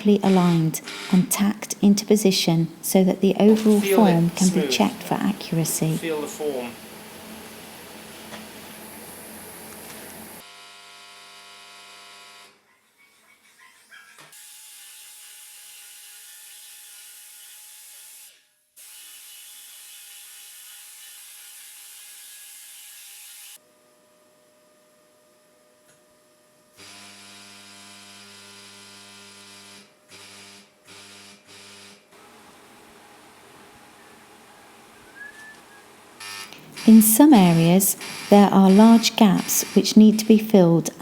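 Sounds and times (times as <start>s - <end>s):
electrical hum: 0.0s - 10.4s, 34.8s - 41.0s
workshop hiss: 3.3s - 10.4s, 32.2s - 41.0s.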